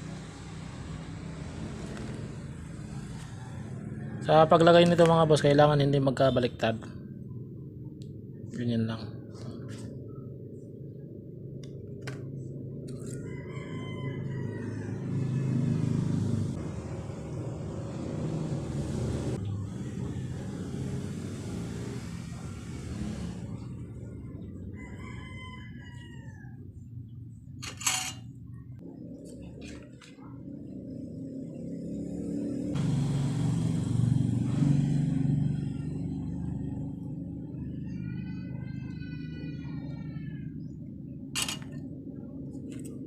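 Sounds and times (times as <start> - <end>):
rooster crowing: 2.9 - 4.7, 12.9 - 16.1, 19.6 - 21.5, 23.4 - 26.8, 41.4 - 41.7.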